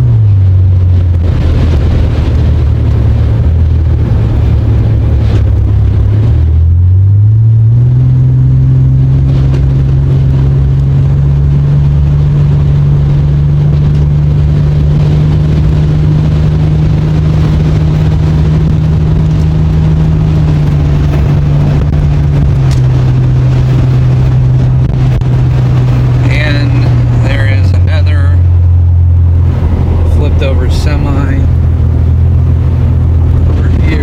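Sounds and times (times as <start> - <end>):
car engine and road noise: 0.0 - 34.0.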